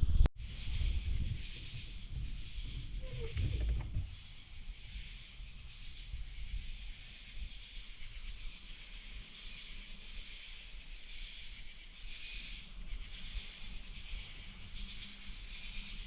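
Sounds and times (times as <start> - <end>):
wind buffeting microphone: 0.0 - 8.2
wind hissing through woods: 0.4 - 16.0.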